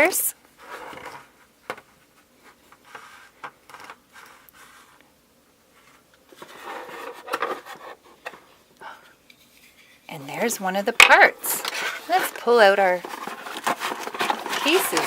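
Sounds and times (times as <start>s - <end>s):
hands handling plastic packaging: 11.0s - 15.0s.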